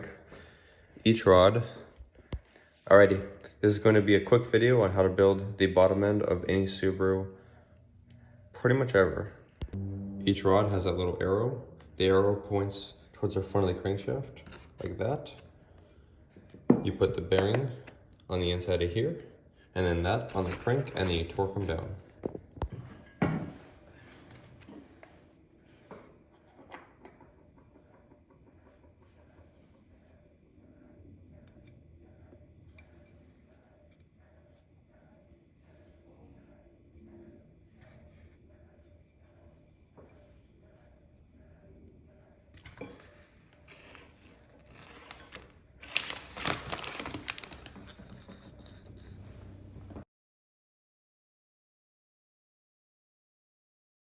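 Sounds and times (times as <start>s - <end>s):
rustling: 43.0s - 49.6s.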